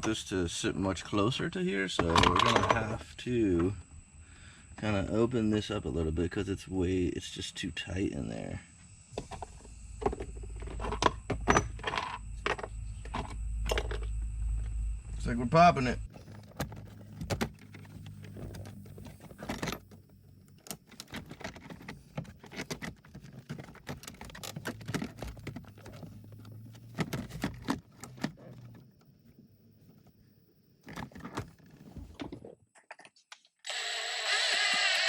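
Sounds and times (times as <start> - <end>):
steady low hum: 0.0 - 30.8
plastic trim clicking and rattling: 20.6 - 28.8.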